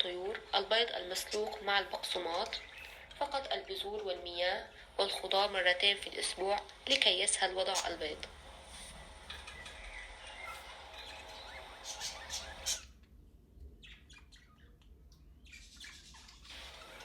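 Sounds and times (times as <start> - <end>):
budgerigars chirping: 0.0 - 6.6, 7.6 - 8.2, 8.8 - 13.0.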